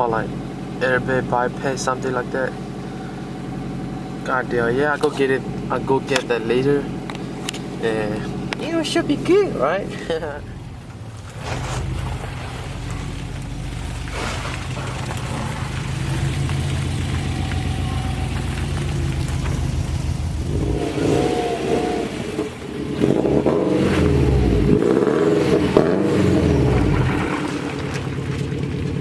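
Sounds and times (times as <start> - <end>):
car engine running and revving: 0.0 - 29.0.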